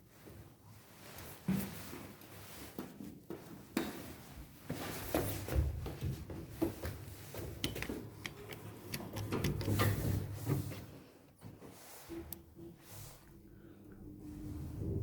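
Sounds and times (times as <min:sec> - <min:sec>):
clicks and rattles: 0:07.6 - 0:10.2
elevator low rumble: 0:13.3 - 0:15.0.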